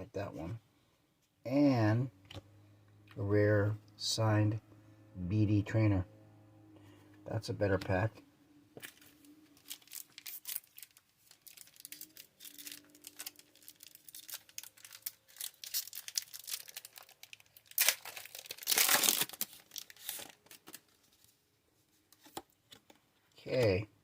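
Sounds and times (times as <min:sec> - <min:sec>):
foil wrapper tearing: 0:09.6 - 0:20.4
foil wrapper crinkling: 0:09.6 - 0:20.9.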